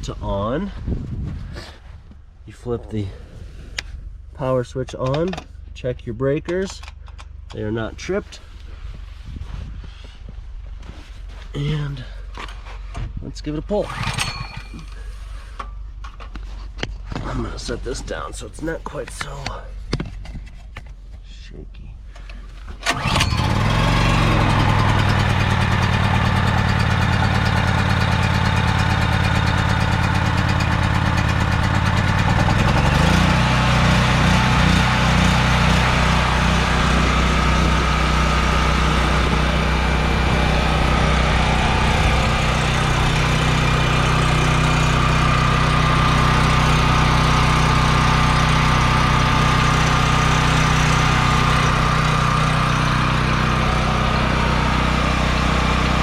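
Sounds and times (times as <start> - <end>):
portable generator engine running: 13.8 - 15.7, 22.8 - 56.0.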